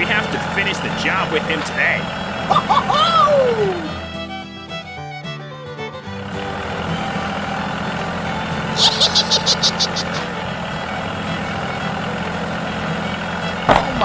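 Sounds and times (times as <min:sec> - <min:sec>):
vehicle engine humming: 0:00.0 - 0:14.0
sharp high chirps: 0:08.8 - 0:10.3.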